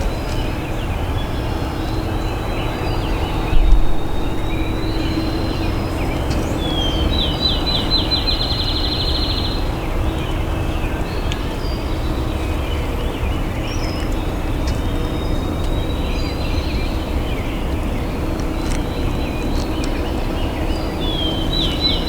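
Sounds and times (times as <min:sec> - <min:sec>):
songbird trilling: 0:00.0 - 0:09.8
low background rumble: 0:00.0 - 0:22.0.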